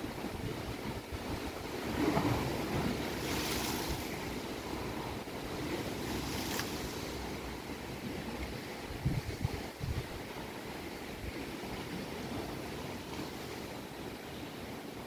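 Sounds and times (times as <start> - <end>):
wind rumbling on microphone: 0.0 - 15.0
lake waves breaking: 0.1 - 14.4.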